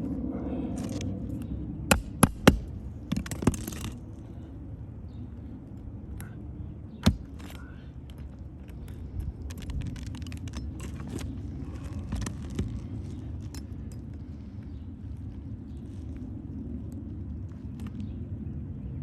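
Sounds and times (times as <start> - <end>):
low steady rumble: 0.0 - 19.0
metal tool clinks and scrapes: 8.9 - 12.8.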